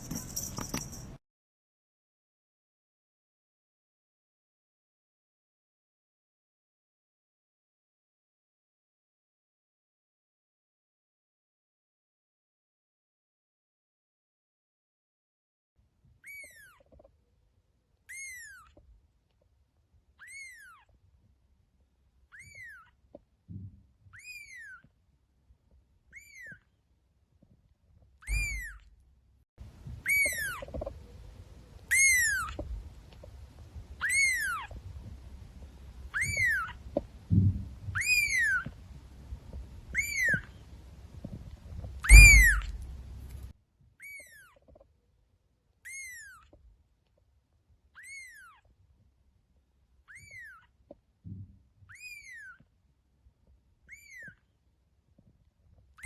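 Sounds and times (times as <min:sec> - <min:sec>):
thumps: 0:00.0 - 0:01.2, 0:28.3 - 0:28.8, 0:29.6 - 0:43.5
cat meowing: 0:28.3 - 0:28.8, 0:30.0 - 0:31.0, 0:31.9 - 0:33.0, 0:33.9 - 0:35.2, 0:36.0 - 0:37.0, 0:38.0 - 0:38.8, 0:39.8 - 0:40.6, 0:42.0 - 0:43.4
low rumble: 0:41.7 - 0:43.5.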